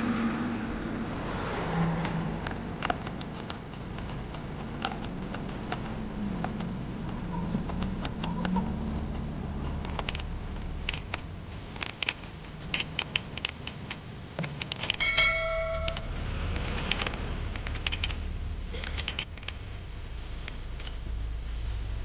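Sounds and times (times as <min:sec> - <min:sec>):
short ringing chime: 0:15.0 - 0:16.1.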